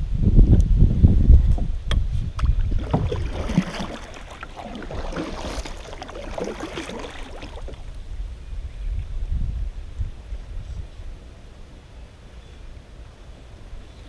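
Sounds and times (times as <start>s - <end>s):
wind buffeting microphone: 0.0s - 11.3s
water lapping against kayak hull: 2.0s - 8.2s.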